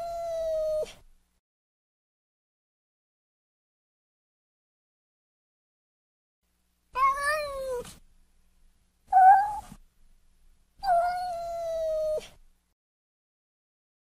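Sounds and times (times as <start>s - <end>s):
kitten meowing: 7.0s - 8.0s, 9.1s - 9.7s, 10.8s - 12.3s.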